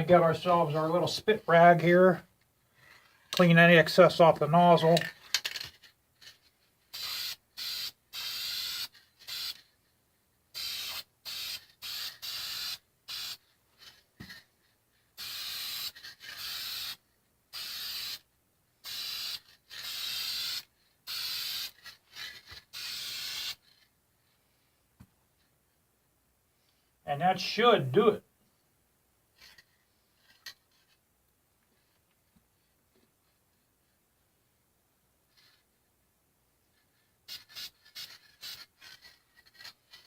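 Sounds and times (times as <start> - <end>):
aerosol paint can spraying: 6.9 - 9.6, 10.6 - 13.4, 15.2 - 18.2, 18.8 - 23.6, 37.3 - 40.0.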